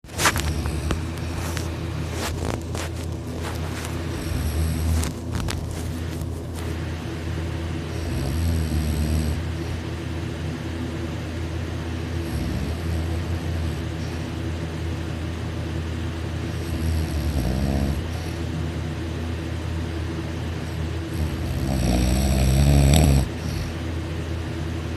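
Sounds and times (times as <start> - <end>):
steady low rumble: 0.0 - 8.1
person snoring loudly: 0.2 - 1.6, 4.0 - 5.1, 7.9 - 9.8, 12.2 - 14.1, 16.5 - 18.5, 21.1 - 23.8.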